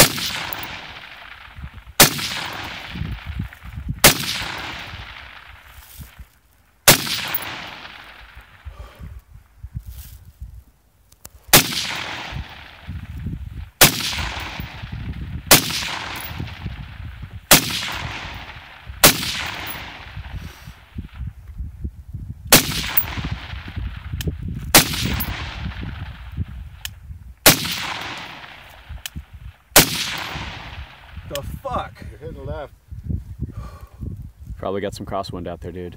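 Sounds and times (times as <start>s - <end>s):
rifle shots with echo: 0.0s - 6.2s, 6.8s - 9.0s, 11.5s - 21.2s, 22.5s - 26.8s, 27.4s - 31.4s.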